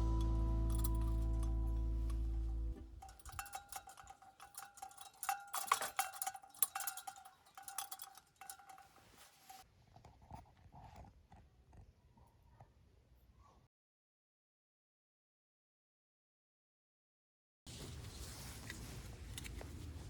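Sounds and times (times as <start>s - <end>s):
background music: 0.0s - 2.8s
light metallic clinks: 0.0s - 9.6s.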